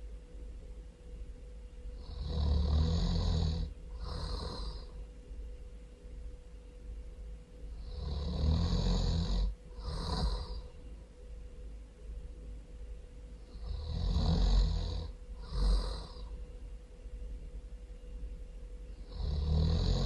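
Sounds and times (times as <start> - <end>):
person snoring loudly: 2.0 - 5.0, 7.8 - 10.6, 13.5 - 16.3, 19.1 - 20.0.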